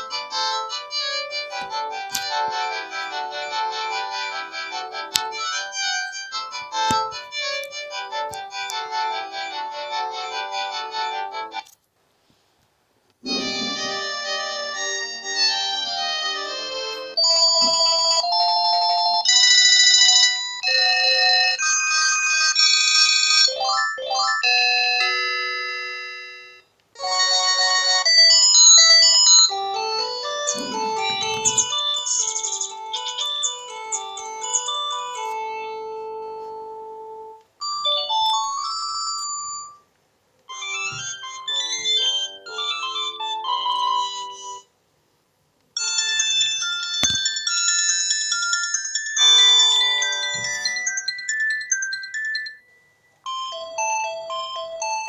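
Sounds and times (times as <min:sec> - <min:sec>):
synthesised ringtone melody: 0:00.0 - 0:11.6, 0:13.2 - 0:39.8, 0:40.5 - 0:44.7, 0:45.8 - 0:55.0
beeping and trilling tones: 0:13.2 - 0:14.3.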